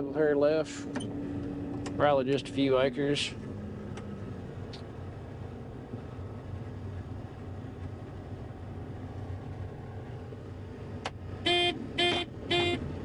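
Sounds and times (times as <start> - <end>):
combine harvester engine drone: 0.0 - 13.0
vehicle horn toots: 11.4 - 12.9.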